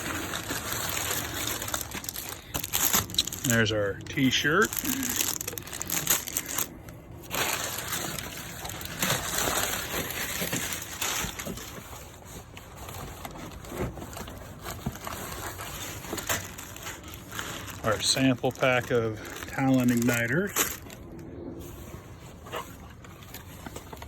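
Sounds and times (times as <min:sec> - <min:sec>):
packaging rustling and crinkling: 0:00.0 - 0:24.0.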